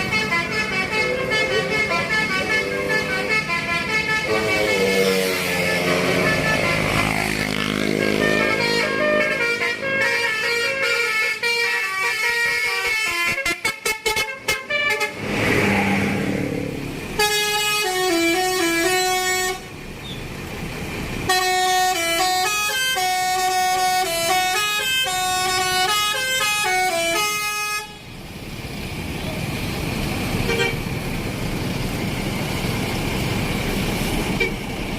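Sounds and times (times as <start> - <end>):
multi-tone bus horn playing tunes: 0.0 - 15.2, 17.1 - 19.9, 21.2 - 28.2, 30.4 - 30.9, 34.4 - 34.7.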